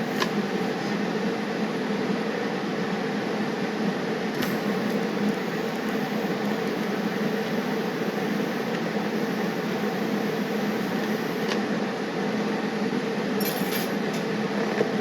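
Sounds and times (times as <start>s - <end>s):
steady mechanical whir: 0.0s - 1.4s, 4.2s - 11.9s.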